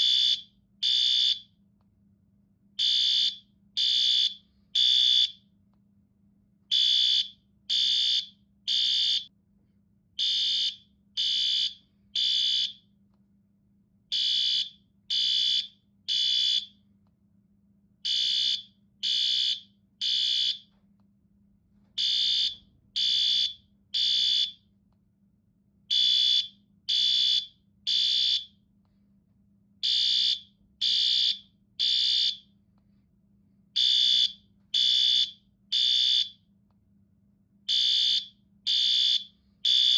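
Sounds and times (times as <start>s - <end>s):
fire alarm beeping: 0.0s - 1.5s, 2.8s - 5.4s, 6.7s - 9.3s, 10.2s - 12.9s, 14.1s - 16.8s, 18.0s - 20.7s, 22.0s - 24.6s, 25.9s - 28.6s, 29.8s - 32.5s, 33.8s - 36.4s, 37.7s - 39.9s.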